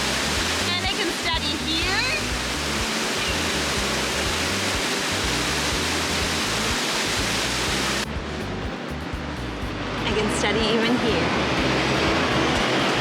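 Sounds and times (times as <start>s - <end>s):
background music: 0.0s - 13.0s
loud rushing noise: 11.0s - 13.0s.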